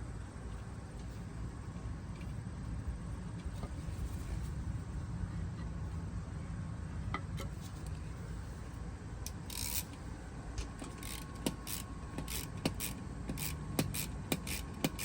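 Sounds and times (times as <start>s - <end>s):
sharp metallic clicks: 9.2s - 15.0s
hand tool rasping strokes: 11.0s - 15.0s.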